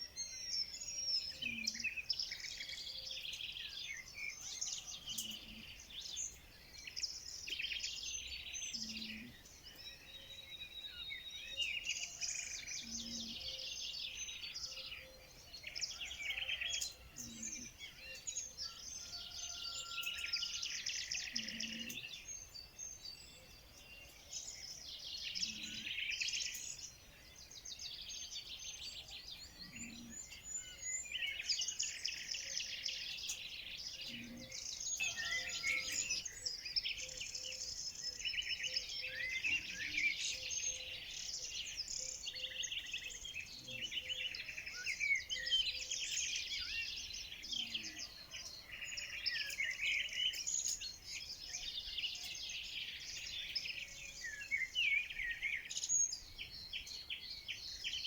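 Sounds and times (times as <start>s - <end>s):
songbirds chirping and trilling: 0.0s - 58.0s.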